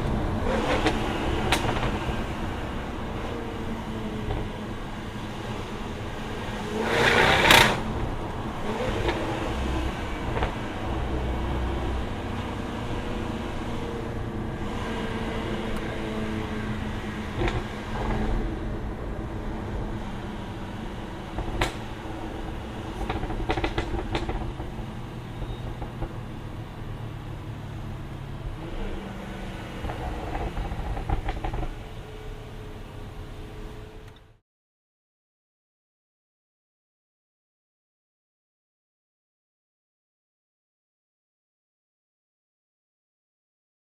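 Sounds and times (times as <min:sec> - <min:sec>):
exhaust pops and crackles: 0:00.0 - 0:02.2, 0:21.3 - 0:22.2, 0:22.8 - 0:26.3, 0:29.8 - 0:31.9.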